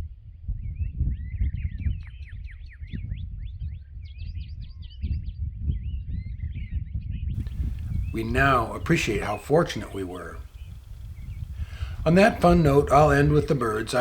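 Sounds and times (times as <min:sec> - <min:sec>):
songbirds singing: 0:07.4 - 0:14.0
steady low rumble: 0:07.4 - 0:14.0.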